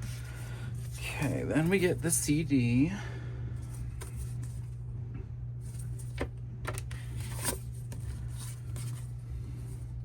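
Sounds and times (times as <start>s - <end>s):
steady low hum: 0.0s - 10.0s
paper rustling: 5.6s - 9.1s.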